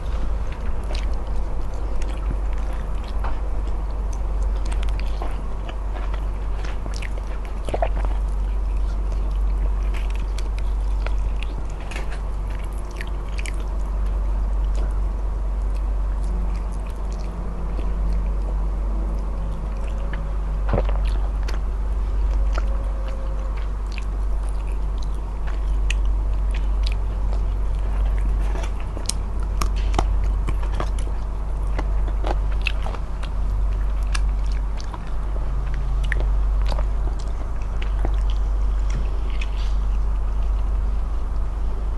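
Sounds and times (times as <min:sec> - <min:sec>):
chewing and biting: 0:00.0 - 0:41.5
steady low hum: 0:00.0 - 0:41.9.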